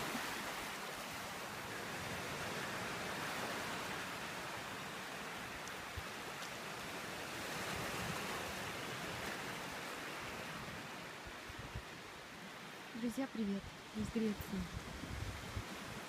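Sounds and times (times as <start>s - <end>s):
sea surf washing onto beach: 0.0s - 16.0s.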